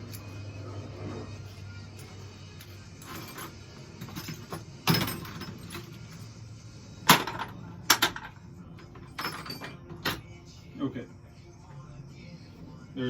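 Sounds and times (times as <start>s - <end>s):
small metal parts clinking: 2.0s - 6.4s, 7.1s - 10.3s.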